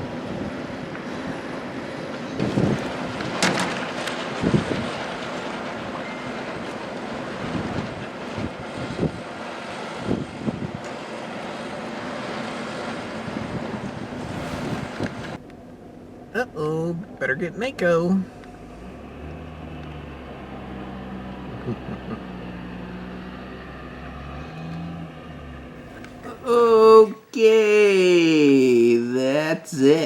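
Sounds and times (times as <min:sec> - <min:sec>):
wind buffeting microphone: 0:00.0 - 0:15.4.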